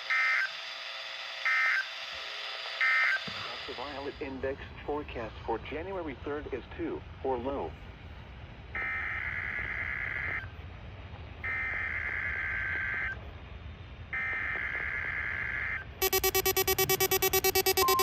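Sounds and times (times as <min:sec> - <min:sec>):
pulsing multi-tone electronic sound: 0:16.0 - 0:18.0
warbling digital data bursts: 0:16.0 - 0:18.0.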